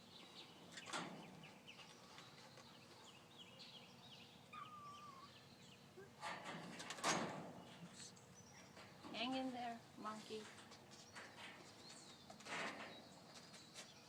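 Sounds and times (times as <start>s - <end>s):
faint bird chirps: 1.3s - 6.2s.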